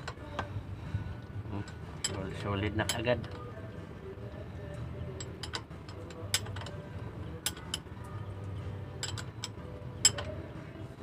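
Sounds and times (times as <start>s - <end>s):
low steady hum: 0.0s - 11.0s
sharp metallic clicks and clinks: 9.0s - 10.4s.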